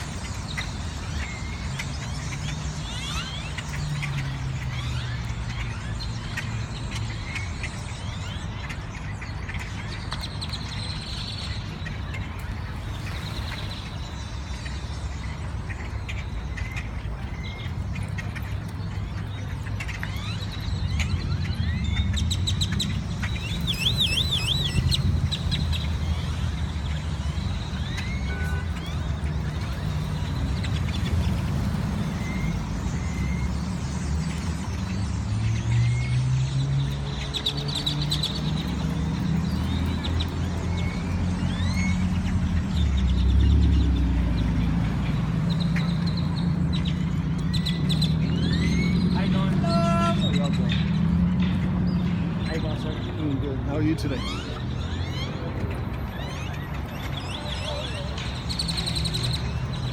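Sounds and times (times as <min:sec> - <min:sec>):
flock of birds chirping: 0:00.0 - 0:59.9
bird warbling trill: 0:19.0 - 0:36.2.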